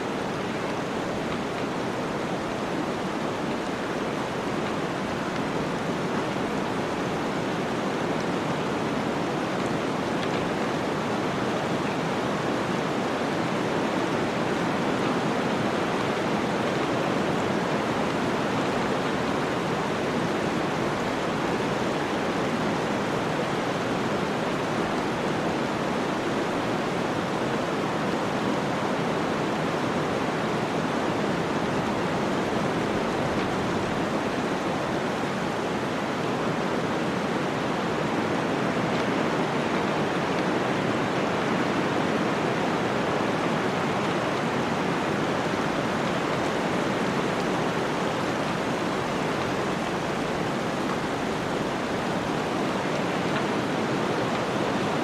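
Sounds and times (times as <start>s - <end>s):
water rushing: 0.0s - 55.0s.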